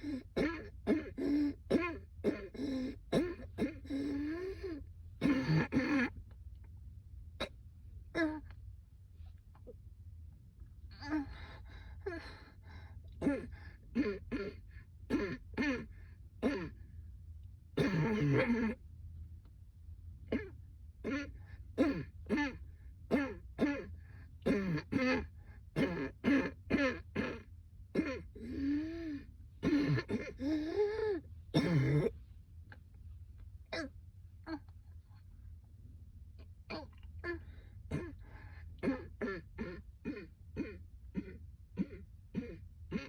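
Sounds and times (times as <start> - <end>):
woman coughing: 0.0 - 4.4, 5.2 - 6.2, 13.2 - 16.8, 17.8 - 18.8, 20.3 - 28.4, 29.6 - 30.9, 31.5 - 32.2, 37.9 - 43.0.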